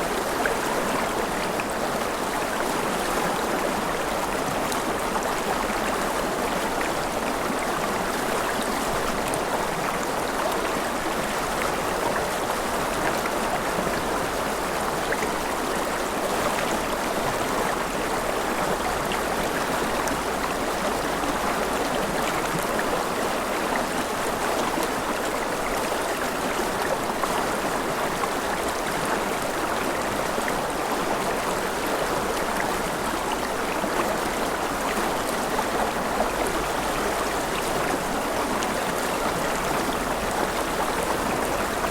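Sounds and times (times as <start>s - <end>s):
river water flowing over stones: 0.0s - 41.9s.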